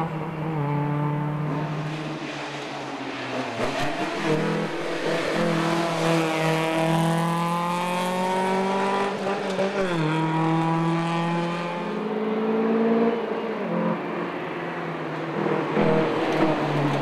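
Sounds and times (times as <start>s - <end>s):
rally car engine accelerating: 0.0s - 14.1s, 15.2s - 17.0s.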